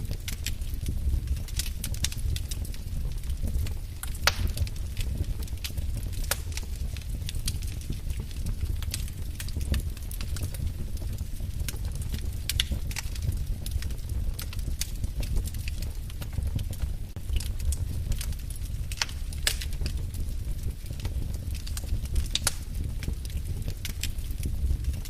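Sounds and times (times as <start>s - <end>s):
fire pops and snaps: 0.0s - 25.0s
low rumble of flames: 0.0s - 25.0s.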